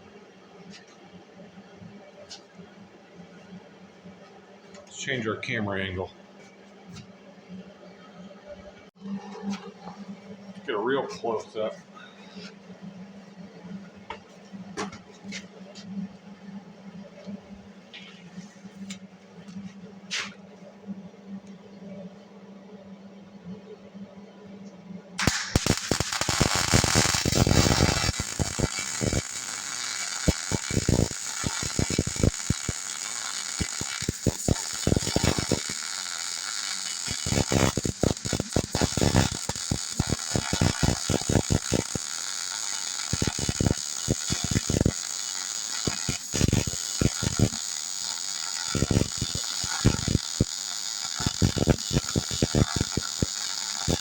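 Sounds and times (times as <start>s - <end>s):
arc welding crackling hiss: 25.2s - 54.0s.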